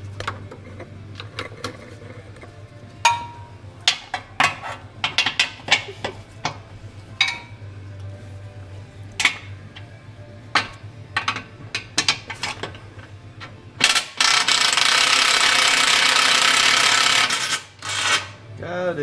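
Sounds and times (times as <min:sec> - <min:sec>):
air impact wrench running: 0:13.8 - 0:18.4.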